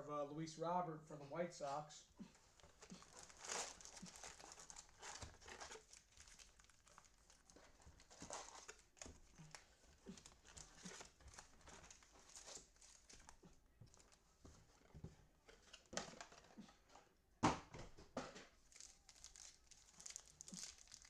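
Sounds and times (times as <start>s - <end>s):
card wrappers crinkling: 2.3s - 14.2s, 18.6s - 21.0s.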